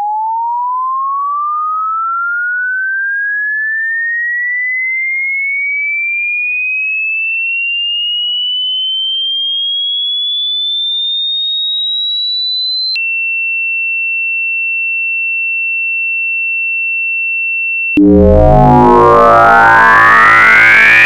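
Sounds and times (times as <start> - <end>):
rising sine-wave tone: 18.0 - 21.0.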